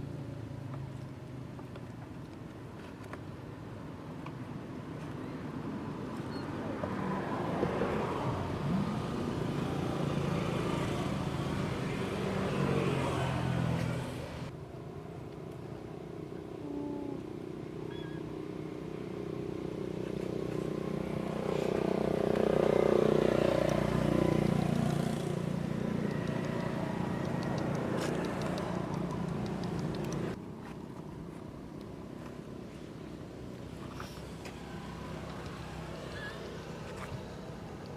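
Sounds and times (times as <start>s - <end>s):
vehicles passing: 0.0s - 37.9s.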